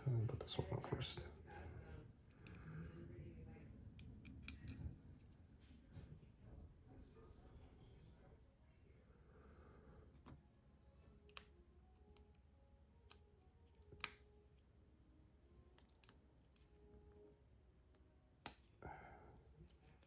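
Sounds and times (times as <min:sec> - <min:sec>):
knife parts clicking: 0:04.4 - 0:04.8, 0:13.9 - 0:14.2.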